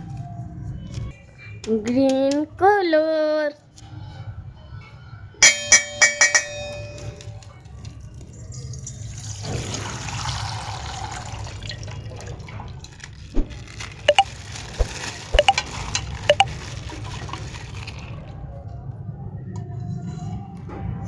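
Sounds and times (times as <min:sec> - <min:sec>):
water pouring and splashing: 0:08.7 - 0:18.4
sharp drips: 0:15.4 - 0:15.6, 0:16.3 - 0:16.5.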